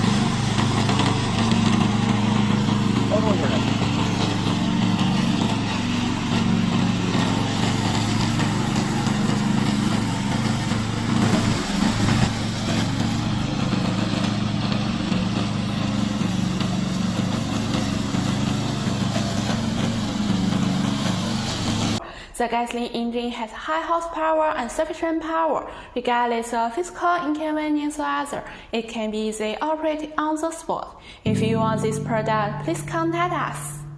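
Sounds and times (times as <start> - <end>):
petrol engine running: 0.0 - 22.0.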